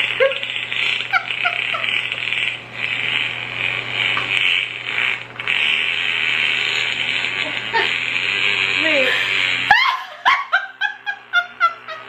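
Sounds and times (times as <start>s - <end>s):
long fart sound effect: 0.0s - 9.7s.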